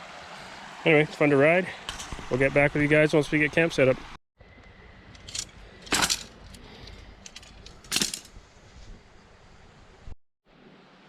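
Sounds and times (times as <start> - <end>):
camping gear clinking: 5.1 - 8.4.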